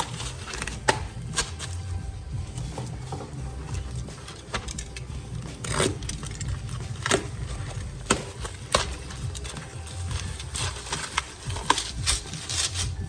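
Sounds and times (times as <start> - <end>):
cardboard rustling: 0.0 - 13.0
rocks knocking: 0.0 - 13.0
tearing or crinkling: 4.2 - 13.0.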